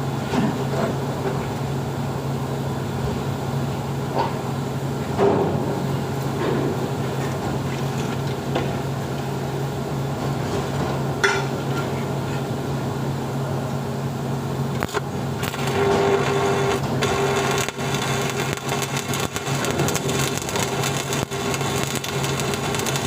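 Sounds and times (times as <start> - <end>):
welding machine hum: 0.0 - 23.0
welding arc crackle: 14.7 - 23.0.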